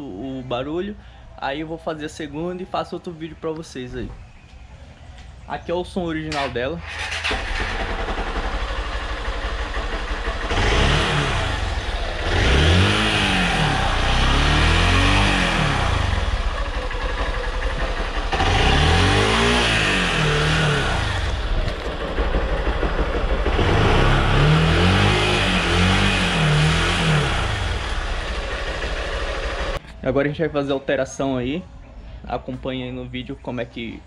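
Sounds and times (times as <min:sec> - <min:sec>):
motorcycle engine revving: 0:06.3 - 0:29.8.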